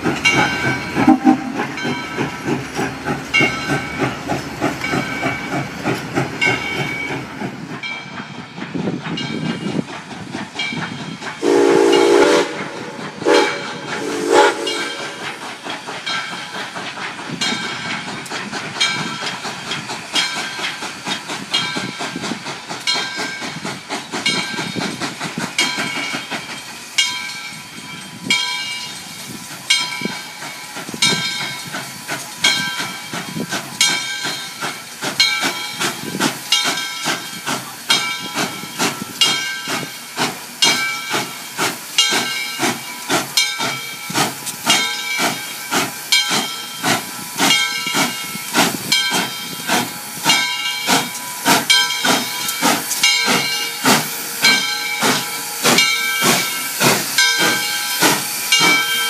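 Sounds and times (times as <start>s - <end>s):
hissing steam: 0.0s - 59.0s
steam locomotive chuffing: 0.0s - 59.0s
steam whistle blasts: 1.0s - 1.8s, 11.4s - 15.2s.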